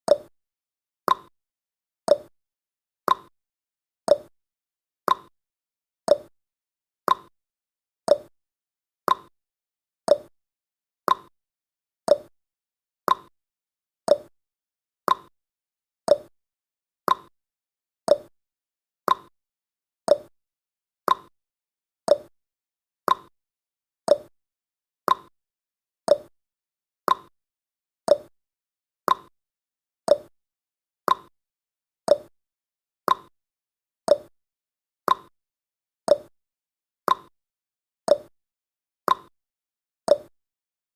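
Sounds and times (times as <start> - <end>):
timer ticking: 0.1 - 0.3, 1.1 - 1.3, 2.1 - 2.3, 3.1 - 3.3, 4.1 - 4.3, 5.1 - 5.3, 6.1 - 6.3, 7.1 - 7.3, 8.1 - 8.3, 9.1 - 9.3, 10.1 - 10.3, 11.1 - 11.3, 12.1 - 12.3, 13.1 - 13.3, 14.1 - 14.3, 15.1 - 15.3, 16.1 - 16.3, 17.1 - 17.3, 18.1 - 18.3, 19.1 - 19.3, 20.1 - 20.3, 21.1 - 21.3, 22.1 - 22.3, 23.1 - 23.3, 24.1 - 24.3, 25.1 - 25.3, 26.1 - 26.3, 27.1 - 27.3, 28.1 - 28.3, 29.1 - 29.3, 30.1 - 30.3, 31.1 - 31.3, 32.1 - 32.3, 33.1 - 33.3, 34.1 - 34.3, 35.1 - 35.3, 36.1 - 36.3, 37.1 - 37.3, 39.1 - 39.3.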